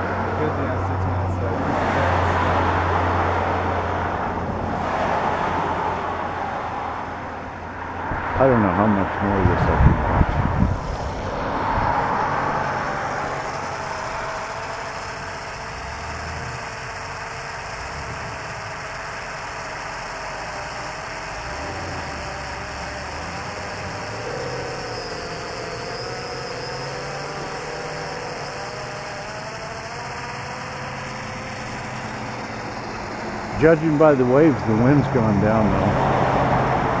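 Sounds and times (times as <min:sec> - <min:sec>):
drone motors whining: 0:00.0 - 0:37.0
wind rumble: 0:03.7 - 0:14.6.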